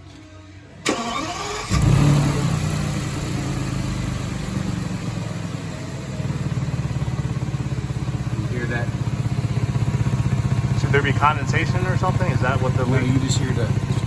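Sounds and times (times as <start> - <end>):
car starter cranking: 0.8 - 3.2
car engine revving and idling: 1.0 - 14.0
pulsing exhaust: 1.0 - 14.0.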